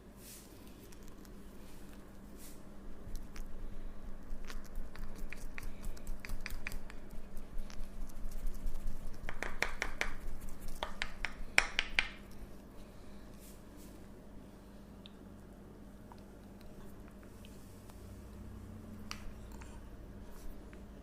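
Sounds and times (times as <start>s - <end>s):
faint steady hum: 0.0s - 21.0s
hands clicking and snapping: 4.4s - 12.4s.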